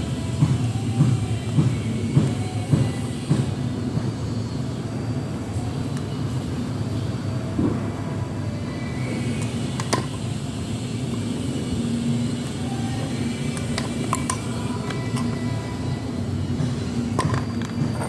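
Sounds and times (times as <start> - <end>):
low mechanical rumble with hum: 0.0 - 18.0.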